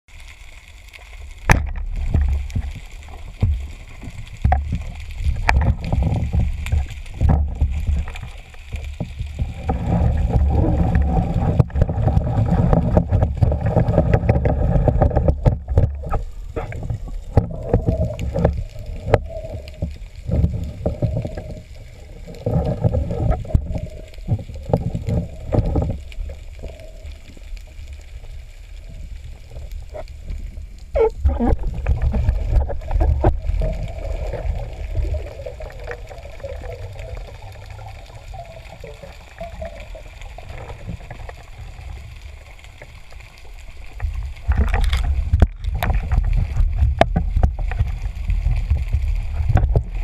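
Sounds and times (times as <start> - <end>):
deep underwater rumble: 0.1 - 50.0
muffled underwater sloshing: 0.2 - 50.0
sharp underwater clicks: 29.5 - 50.0.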